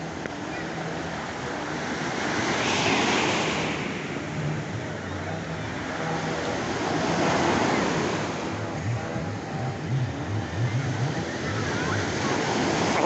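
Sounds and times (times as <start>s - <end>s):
ocean surf breaking: 0.0s - 13.0s
wind on microphone: 0.0s - 13.0s.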